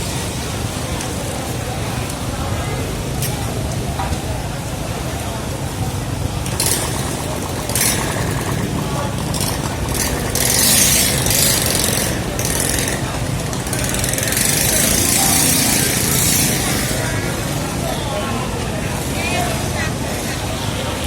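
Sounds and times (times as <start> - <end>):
people talking: 0.0 - 21.0
engine running: 6.1 - 18.0.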